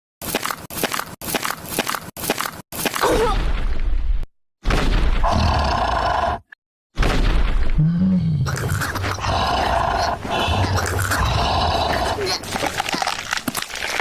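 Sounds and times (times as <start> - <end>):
animal growling roar with grunts: 5.2 - 6.5, 7.8 - 12.4.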